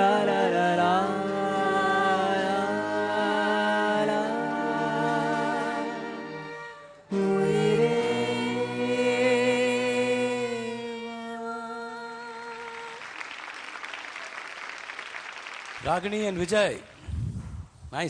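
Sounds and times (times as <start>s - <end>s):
man and woman singing duet: 0.0s - 13.0s
acoustic string instruments: 0.0s - 13.2s
audience applause: 12.5s - 16.9s.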